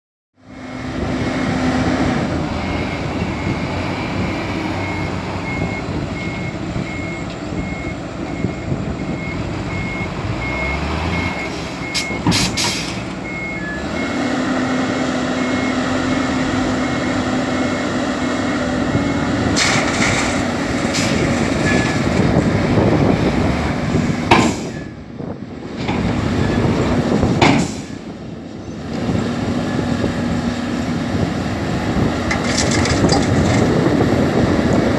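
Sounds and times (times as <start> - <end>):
excavator diesel engine: 0.4 - 34.9
reversing alarm beeping: 2.5 - 14.3, 15.3 - 17.8.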